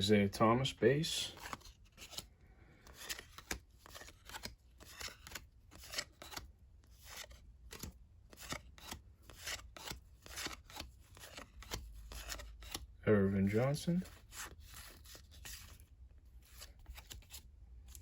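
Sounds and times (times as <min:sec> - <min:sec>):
cardboard cards flicking: 0:02.9 - 0:06.4.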